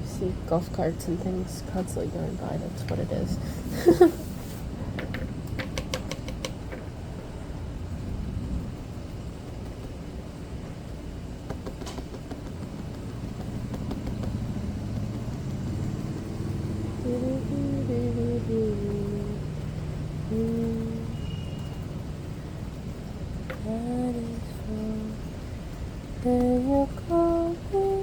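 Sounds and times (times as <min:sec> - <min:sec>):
motor vehicle engine rumble: 0:00.0 - 0:28.0
wavering pitched hum: 0:12.1 - 0:28.0.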